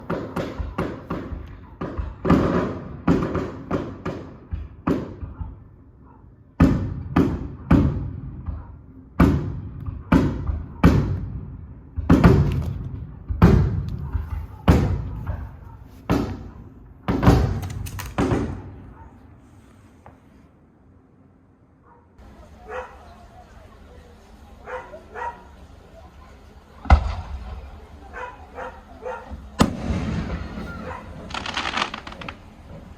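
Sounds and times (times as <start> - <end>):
firework shells bursting: 29.4 - 32.9.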